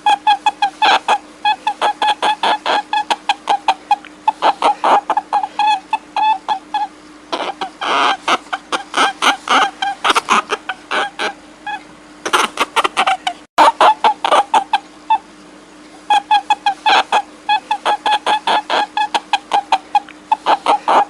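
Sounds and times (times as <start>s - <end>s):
animal short pitched calls: 0.0s - 15.4s, 16.0s - 21.0s.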